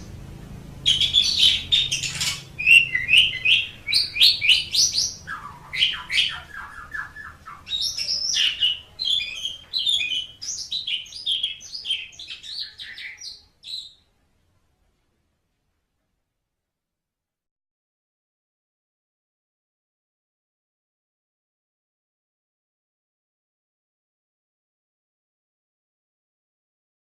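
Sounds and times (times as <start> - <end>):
starling singing: 0.8 - 14.0.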